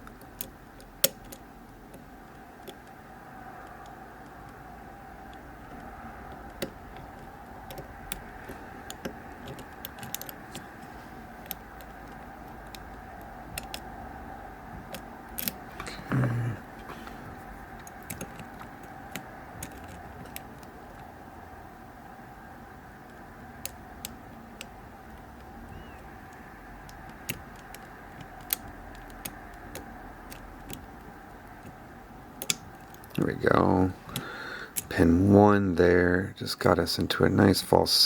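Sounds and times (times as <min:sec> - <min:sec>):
lock pick clicking in lock: 0:00.0 - 0:02.0, 0:05.3 - 0:10.7, 0:11.4 - 0:13.9, 0:14.8 - 0:15.7, 0:17.8 - 0:21.0, 0:23.6 - 0:31.0, 0:32.4 - 0:33.2
steady background hum: 0:00.0 - 0:38.0.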